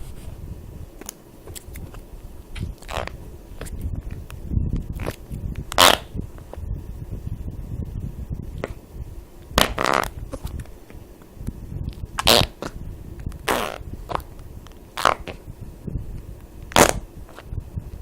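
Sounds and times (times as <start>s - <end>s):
low rumbling background: 1.7s - 18.0s
fart sounds: 5.8s - 6.1s, 9.6s - 10.2s, 12.2s - 12.7s, 13.4s - 14.2s, 15.0s - 15.4s, 16.7s - 17.0s.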